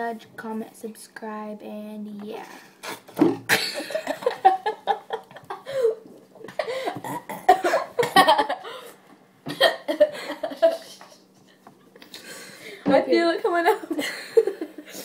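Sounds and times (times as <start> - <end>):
girls coughing: 3.5 - 4.1, 6.5 - 8.5, 9.5 - 11.1
girls laughing: 3.5 - 7.0, 7.6 - 8.9, 9.5 - 11.2, 13.7 - 15.0.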